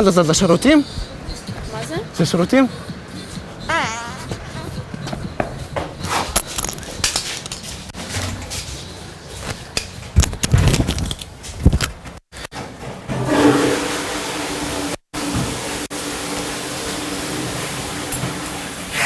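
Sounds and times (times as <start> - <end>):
toilet flushing: 12.6 - 19.0.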